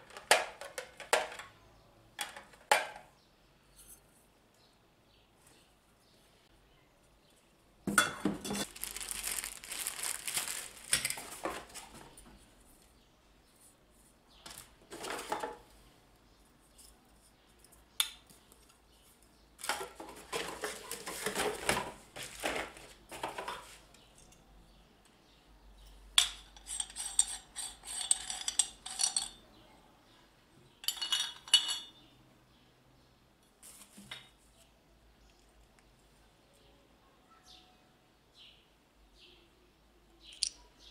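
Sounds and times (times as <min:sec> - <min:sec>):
metal parts clinking together: 0:26.2 - 0:29.4, 0:30.8 - 0:31.9.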